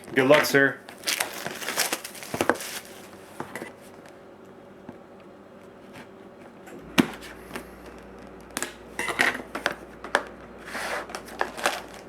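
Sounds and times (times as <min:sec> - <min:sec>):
cardboard and plastic rustling: 0:00.0 - 0:04.1, 0:09.3 - 0:12.0.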